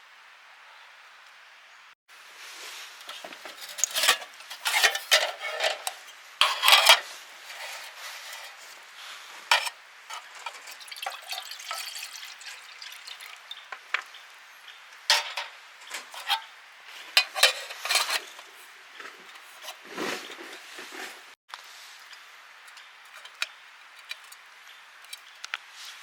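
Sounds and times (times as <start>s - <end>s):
metal cookware clinking and scraping: 3.1s - 8.8s, 9.5s - 13.6s, 15.1s - 16.5s, 17.1s - 18.4s, 22.7s - 24.4s.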